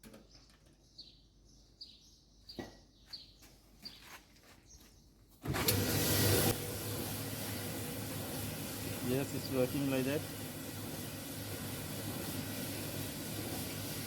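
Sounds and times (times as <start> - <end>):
dryer running with low hum: 5.4 - 14.0.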